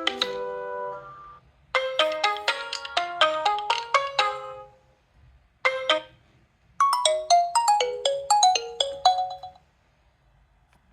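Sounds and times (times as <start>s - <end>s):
phone ringtone chime: 0.0s - 4.8s, 5.7s - 6.2s, 6.8s - 9.6s.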